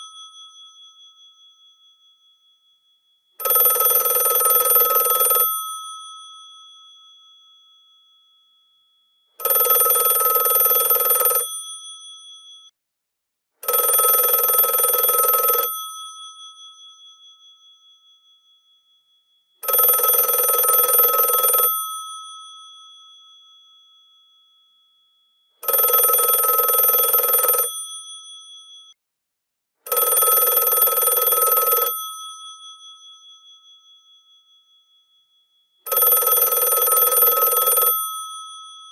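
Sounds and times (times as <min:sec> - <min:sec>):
rotary telephone bells ringing: 0:03.4 - 0:06.2, 0:09.4 - 0:12.0, 0:19.6 - 0:22.4, 0:25.6 - 0:28.3, 0:29.9 - 0:33.0, 0:35.9 - 0:38.9.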